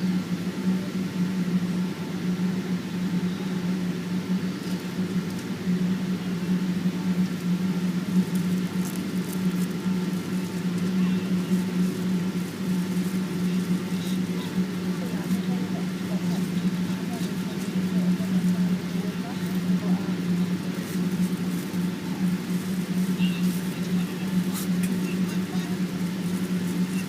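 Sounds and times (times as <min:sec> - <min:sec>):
aircraft cabin drone: 0:00.0 - 0:27.0
faint high steady tones: 0:06.7 - 0:27.0.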